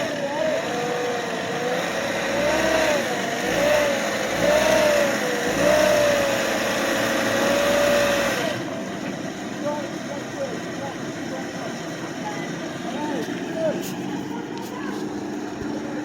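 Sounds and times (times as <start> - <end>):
engine revving: 0.0 - 10.8.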